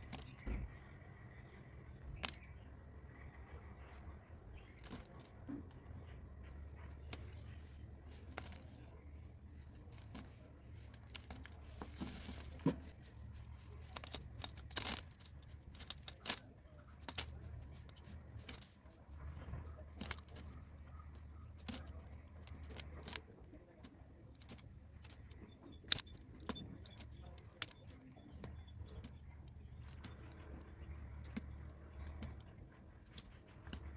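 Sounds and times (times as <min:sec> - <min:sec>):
blade crunching soap: 0:07.0 - 0:33.9.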